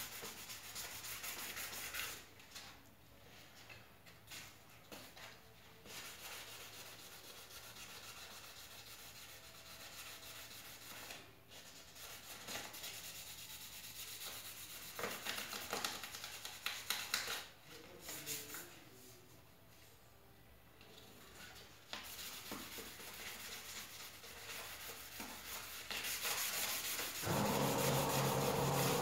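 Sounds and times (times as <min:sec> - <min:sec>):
hand sanding plastic: 0:21.9 - 0:29.0.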